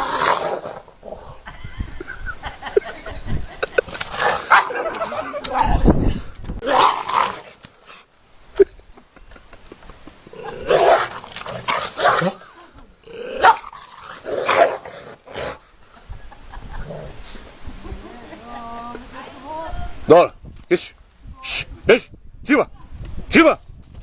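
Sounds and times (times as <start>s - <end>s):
dog barking and growling: 0.0s - 0.9s, 4.0s - 5.1s, 6.6s - 7.6s, 10.4s - 12.5s, 13.1s - 15.6s.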